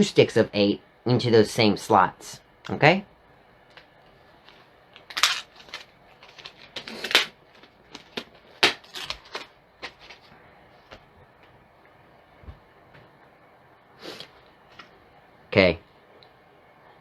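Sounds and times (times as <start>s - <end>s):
plastic packaging clicking and crinkling: 5.0s - 10.3s.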